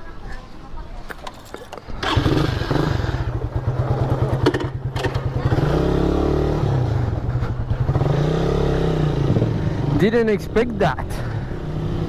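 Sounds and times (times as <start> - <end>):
motorcycle engine pulsing: 1.9 - 10.6.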